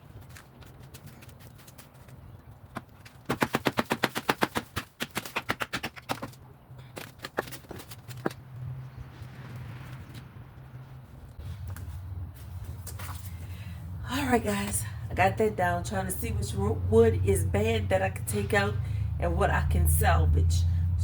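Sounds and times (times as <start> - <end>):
rapid sharp knocks on wood: 3.3 - 6.3.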